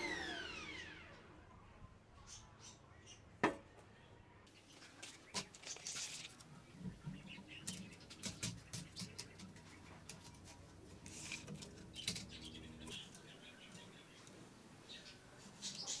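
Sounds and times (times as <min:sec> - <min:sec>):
light clicks taps and rustling: 0:04.8 - 0:14.4.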